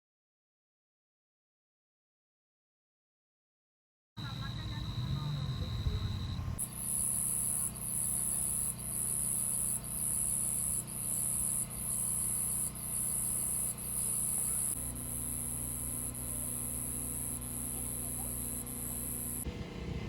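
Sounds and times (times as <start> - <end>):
insects trilling: 4.2 - 19.4
steady low hum: 4.2 - 20.0.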